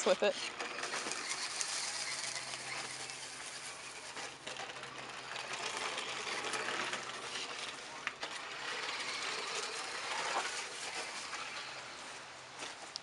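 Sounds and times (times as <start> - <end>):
small electric motor whirring: 0.0 - 12.3.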